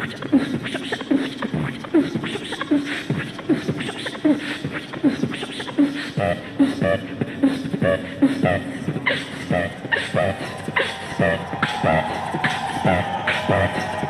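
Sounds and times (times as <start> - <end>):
human beatboxing: 0.0 - 14.0
pitched vocal notes: 0.0 - 14.0.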